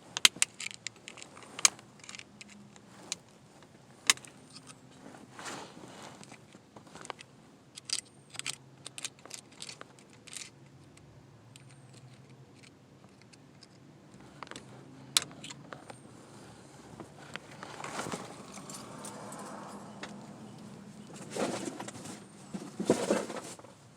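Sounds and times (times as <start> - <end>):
metal tools clicking: 7.0 - 11.0, 11.6 - 16.0
metal scraping: 14.2 - 23.6.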